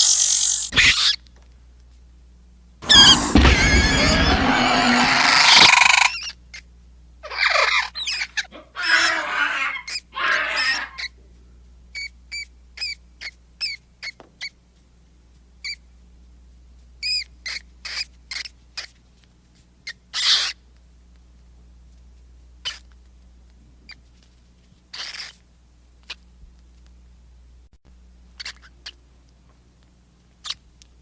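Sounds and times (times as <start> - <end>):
short high chirps: 2.8 - 4.0
creature screeching: 2.8 - 6.1, 8.8 - 11.0.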